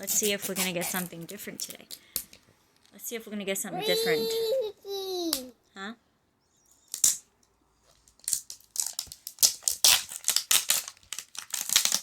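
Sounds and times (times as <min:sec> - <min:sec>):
plastic wrapping tearing and crinkling: 0:08.0 - 0:12.0.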